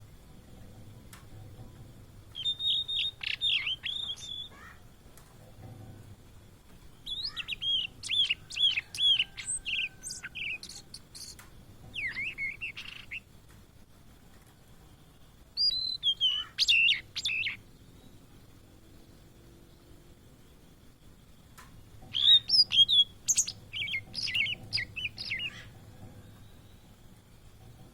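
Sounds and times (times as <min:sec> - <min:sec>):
bird singing high whistled notes: 0:02.4 - 0:04.7, 0:07.0 - 0:11.4, 0:12.0 - 0:13.3, 0:15.6 - 0:17.6, 0:22.1 - 0:25.8.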